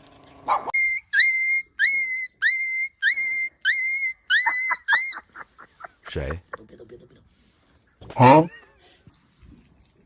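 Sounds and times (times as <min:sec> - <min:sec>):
shrill whistle notes: 0:00.8 - 0:05.1.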